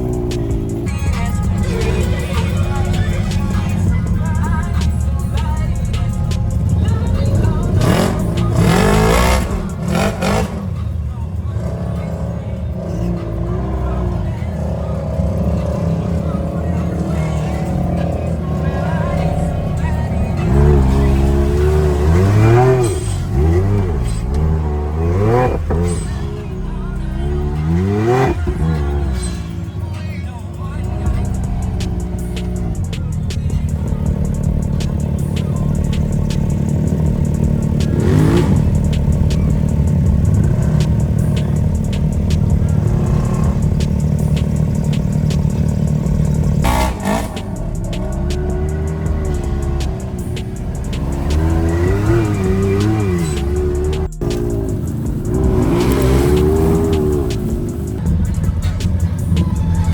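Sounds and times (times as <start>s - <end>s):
sharp ticks and clatter: 0.0s - 10.7s, 26.9s - 59.9s
off-road vehicle engine revving: 0.0s - 59.9s.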